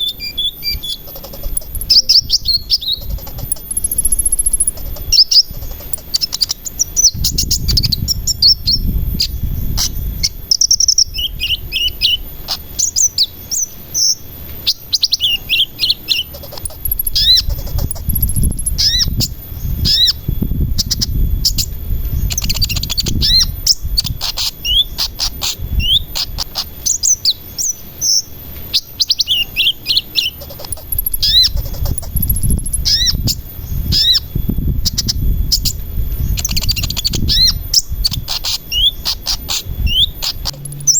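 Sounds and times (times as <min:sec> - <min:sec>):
bird singing high chirps: 0:00.0 - 0:40.9
low background rumble: 0:00.0 - 0:40.9.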